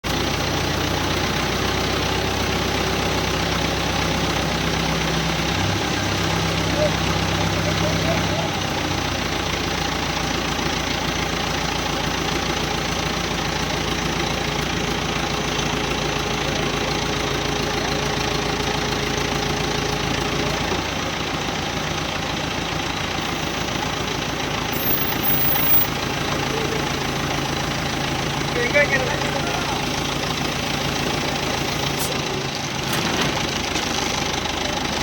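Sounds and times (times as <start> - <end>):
engine idling: 0.0 - 35.0.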